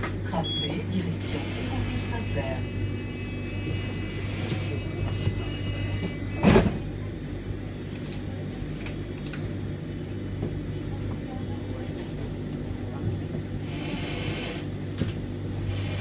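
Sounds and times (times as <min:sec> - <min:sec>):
tram electric hum: 0:00.0 - 0:16.0
high whine: 0:01.2 - 0:07.8.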